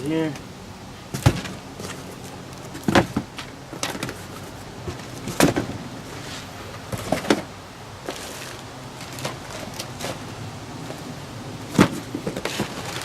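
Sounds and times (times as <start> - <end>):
knocks and thuds: 1.1 - 2.0, 2.8 - 4.1, 11.7 - 12.8
scraping of packaging: 11.7 - 13.0.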